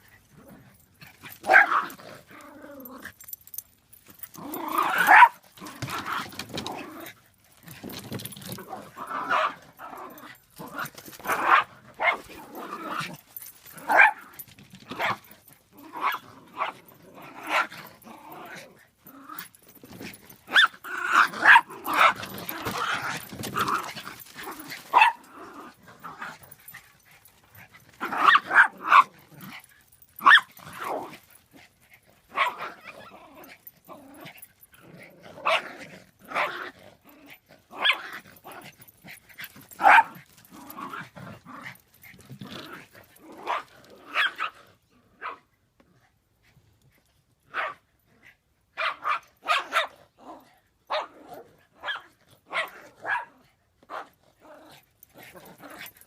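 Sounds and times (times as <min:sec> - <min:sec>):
dogs barking and growling: 0:00.0 - 0:56.0.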